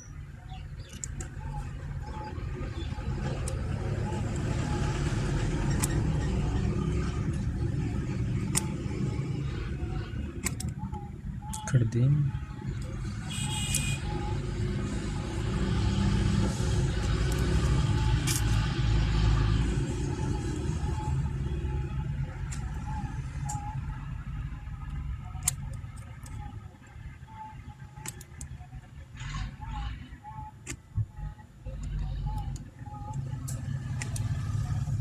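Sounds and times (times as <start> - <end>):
low vehicle rumble: 0.0 - 35.0
sharp clicks: 0.8 - 2.1, 2.7 - 11.9, 12.7 - 19.0, 22.3 - 24.0, 28.0 - 28.6, 30.6 - 35.0.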